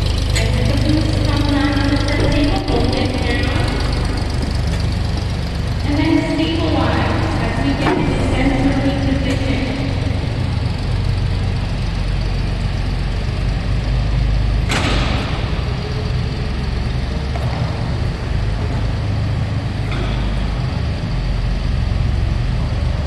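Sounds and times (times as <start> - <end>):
low mechanical rumble: 0.0 - 23.0.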